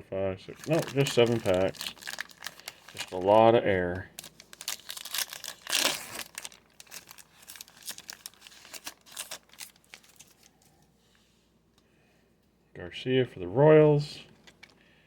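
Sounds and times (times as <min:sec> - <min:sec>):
foil wrapper crinkling and tearing: 0:00.5 - 0:10.6.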